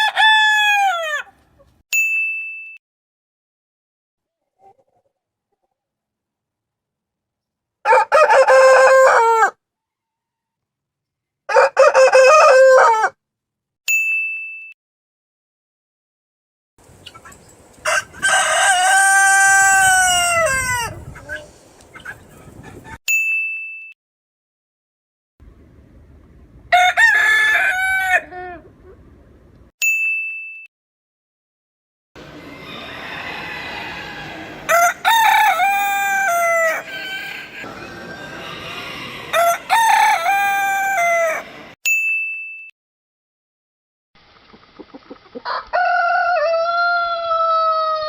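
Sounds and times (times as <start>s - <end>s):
rooster crowing: 0.0s - 1.3s, 7.8s - 10.6s, 11.5s - 13.1s, 17.8s - 21.3s, 26.7s - 28.6s, 32.3s - 41.8s, 45.4s - 48.0s
short high ding: 2.0s - 2.8s, 13.9s - 14.8s, 23.1s - 24.0s, 29.8s - 30.7s, 41.8s - 42.7s.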